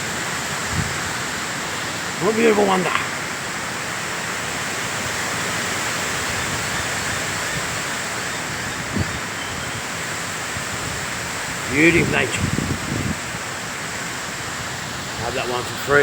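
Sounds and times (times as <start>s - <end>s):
wind rushing: 10.5s - 13.4s.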